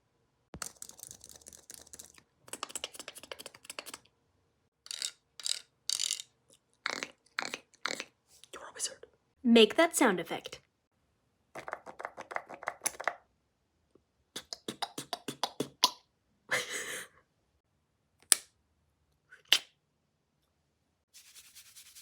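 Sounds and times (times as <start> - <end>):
mouth pops: 6.8 - 8.1, 14.4 - 16.0
mouth click: 14.4 - 16.0, 19.4 - 19.7.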